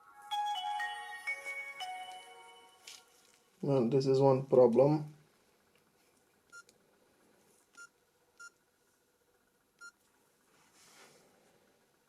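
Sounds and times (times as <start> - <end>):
faint soft rustle: 10.1 - 11.8.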